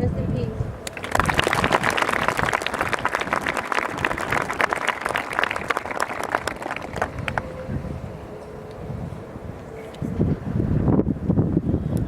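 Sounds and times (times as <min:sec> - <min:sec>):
audience applauding: 0:00.8 - 0:07.8.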